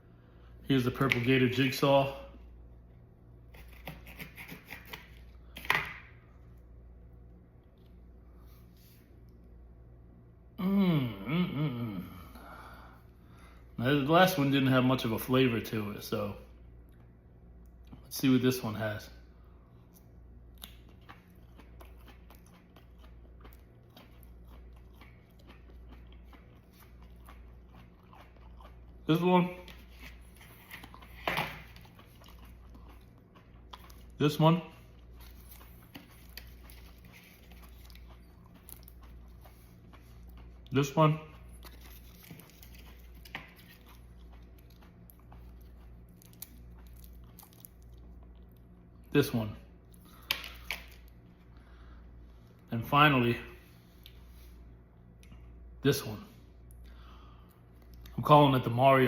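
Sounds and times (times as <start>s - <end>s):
steady low hum: 0.0s - 59.0s
crunchy chewing: 19.9s - 34.2s, 34.8s - 40.7s, 41.3s - 48.7s.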